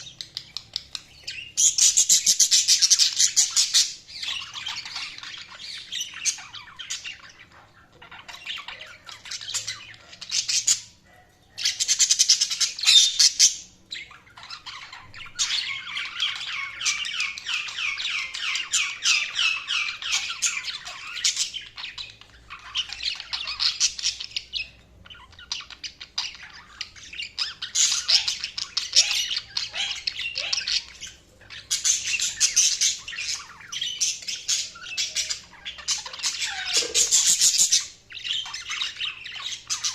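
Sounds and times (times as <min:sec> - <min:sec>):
budgerigars chirping and warbling: 0:00.0 - 0:39.9
bird squawks: 0:25.1 - 0:39.9.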